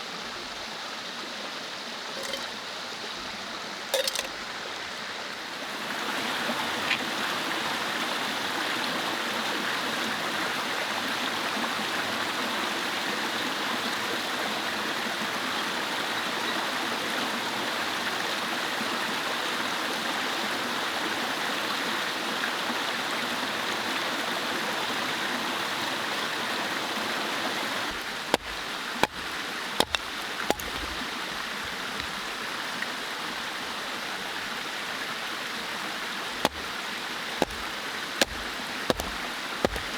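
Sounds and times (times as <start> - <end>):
stream flowing: 0.0 - 16.4, 25.4 - 39.9.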